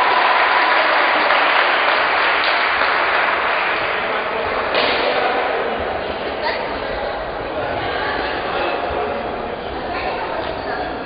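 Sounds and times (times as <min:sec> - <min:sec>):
crowd applause: 0:00.0 - 0:04.7.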